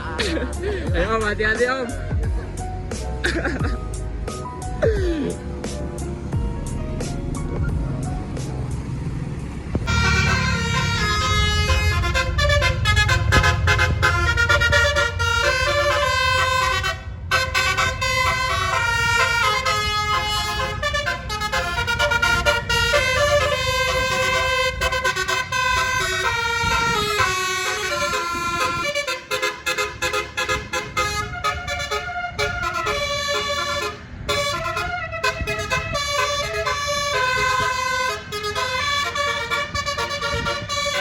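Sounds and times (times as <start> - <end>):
bus engine rumbling: 0.0 - 41.0
bus horn playing a tune: 9.8 - 41.0.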